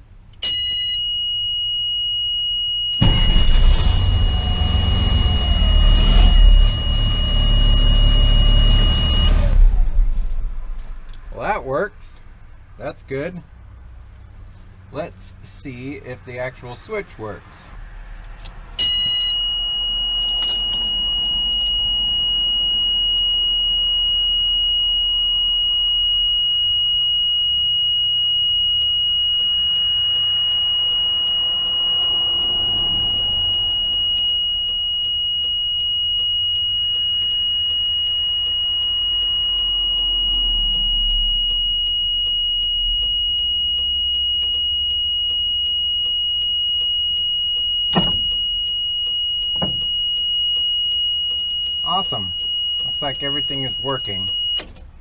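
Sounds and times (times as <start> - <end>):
high-pitched electronic warning tone: 0.4 - 13.3, 18.7 - 54.8
truck engine rumble: 3.0 - 18.8, 30.9 - 34.9.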